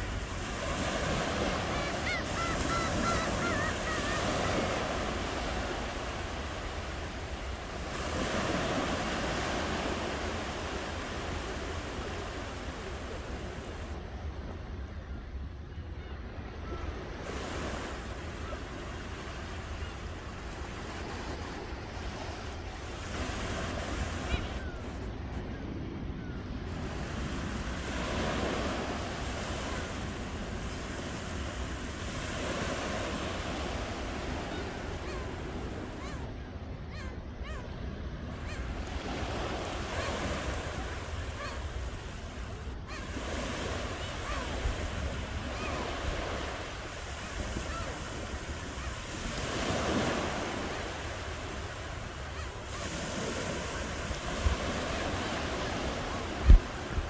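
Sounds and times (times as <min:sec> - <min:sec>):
ocean waves breaking on shore: 0:00.0 - 0:57.0
wind rumble on microphone: 0:53.8 - 0:57.0.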